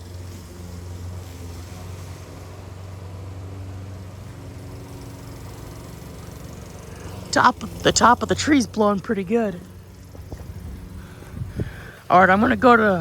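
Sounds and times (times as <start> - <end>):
lawnmower engine droning: 0.0 - 13.0
wind hiss: 10.1 - 12.6.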